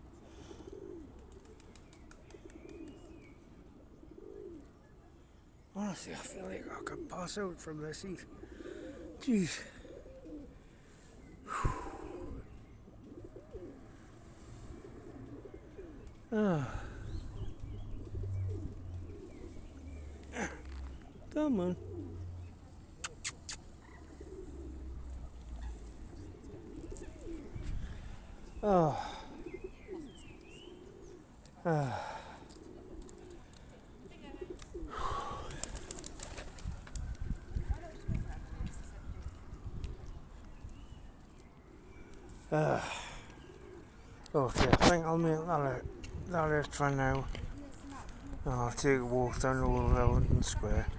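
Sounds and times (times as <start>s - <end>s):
pigeons cooing: 0.0s - 50.9s.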